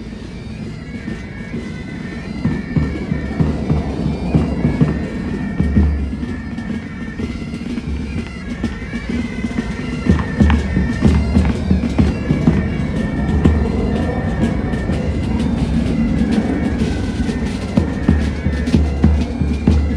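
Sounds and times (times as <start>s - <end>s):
bagpipes playing melody: 0.0s - 19.9s
heavy drum beats: 2.2s - 19.9s.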